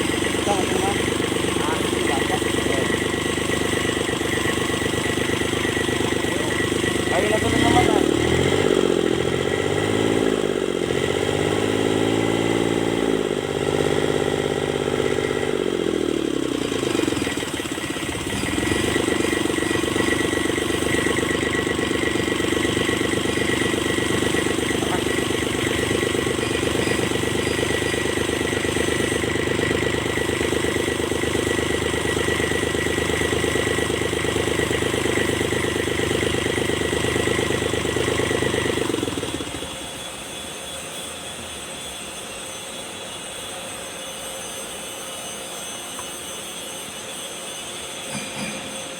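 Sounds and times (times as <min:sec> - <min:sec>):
steady high whine: 0:00.0 - 0:09.7, 0:15.5 - 0:33.0
diesel engine revving: 0:00.0 - 0:40.0.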